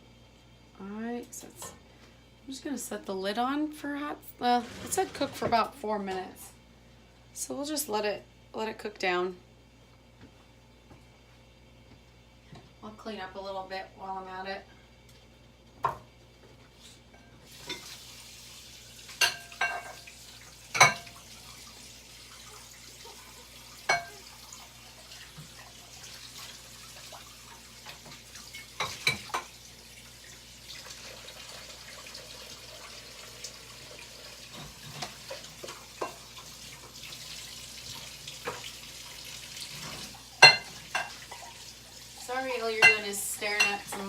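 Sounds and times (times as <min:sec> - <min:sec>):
crockery and utensils clinking: 0:19.2 - 0:20.0, 0:20.7 - 0:21.2, 0:23.9 - 0:24.2, 0:40.4 - 0:41.2, 0:42.7 - 0:44.0.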